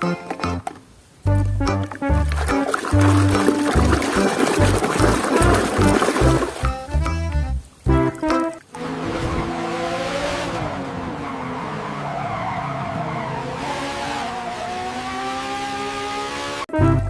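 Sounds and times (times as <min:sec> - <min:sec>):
race car engine: 0:08.8 - 0:16.7.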